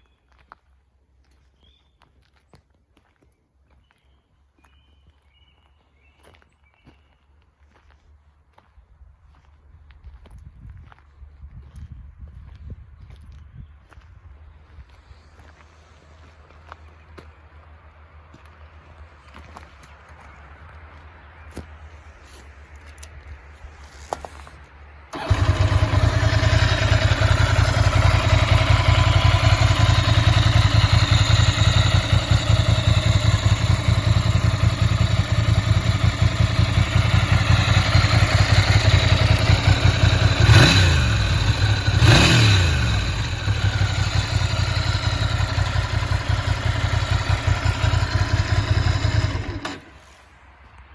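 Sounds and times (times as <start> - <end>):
motorcycle engine starting and idling: 23.9 - 50.3
motorcycle throttle blips: 25.1 - 50.0.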